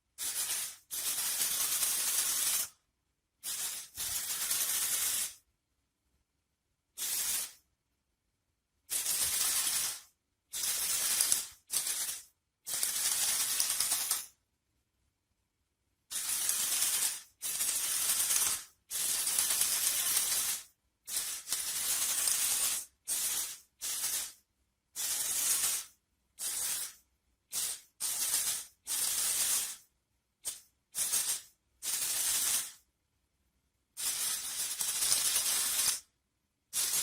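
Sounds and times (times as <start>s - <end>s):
high-pitched hissing bursts: 7.0s - 7.6s.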